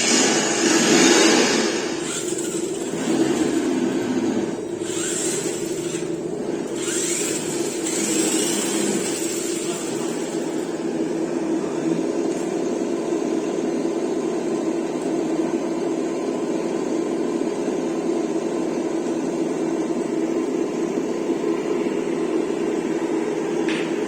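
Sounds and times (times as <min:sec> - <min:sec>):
simulated engine sound: 0:00.0 - 0:12.2.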